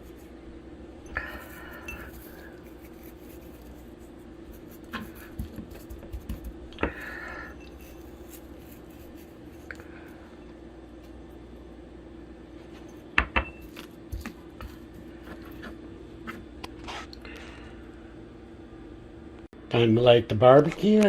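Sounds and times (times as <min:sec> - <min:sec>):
scraping and rubbing meat: 0:00.0 - 0:00.4, 0:01.2 - 0:10.3, 0:13.7 - 0:17.2
faint hum: 0:00.0 - 0:21.0.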